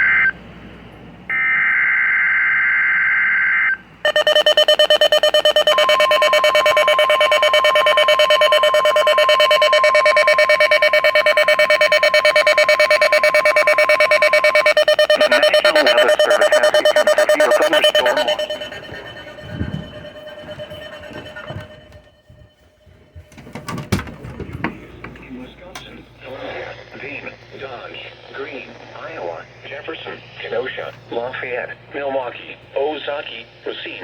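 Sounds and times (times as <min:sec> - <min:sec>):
steady warning tone: 0:01.3 - 0:23.8
rapid pulsing alarm beep: 0:04.0 - 0:23.2
warbling data bursts: 0:04.1 - 0:22.3.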